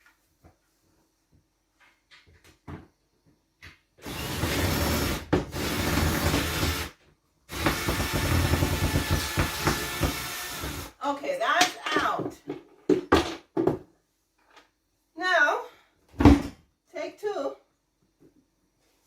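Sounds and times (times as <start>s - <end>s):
power drill running: 4.0s - 11.0s.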